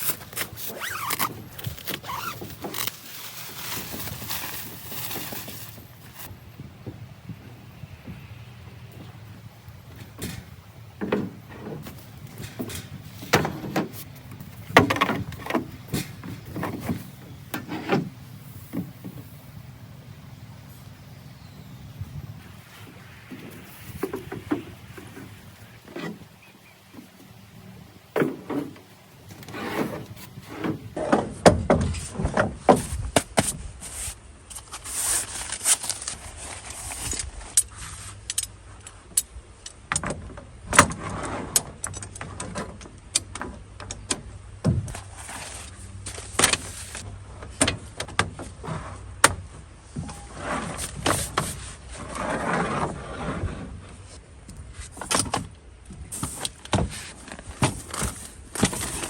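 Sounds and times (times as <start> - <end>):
camping gear knocks and clinks: 10.0 - 17.4.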